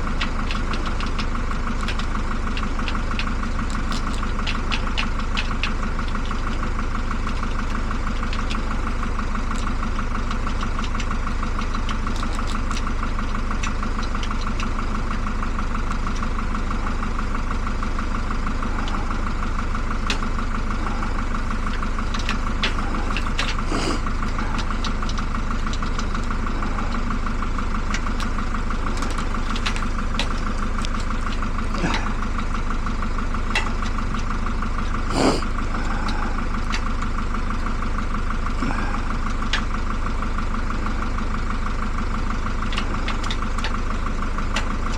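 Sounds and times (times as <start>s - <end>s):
vehicle engine idling: 0.0s - 44.9s
faint small clicks and taps: 0.2s - 6.6s, 42.7s - 43.8s.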